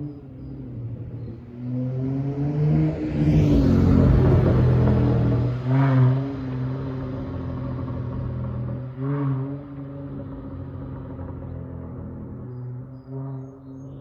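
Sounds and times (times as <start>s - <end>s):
car exhaust rumble: 3.0s - 14.0s.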